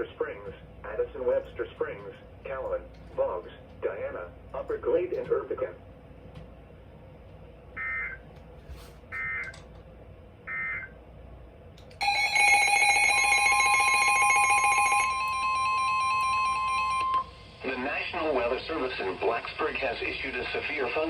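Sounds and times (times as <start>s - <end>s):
multi-tone electronic alert: 12.0s - 17.2s
steady single-pitch alarm tone: 12.0s - 17.5s.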